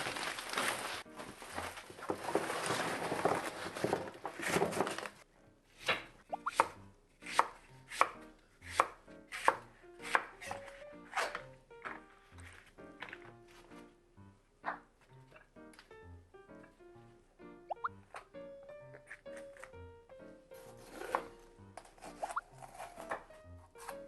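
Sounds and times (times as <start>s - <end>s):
knife chopping on cutting board: 5.8s - 12.0s.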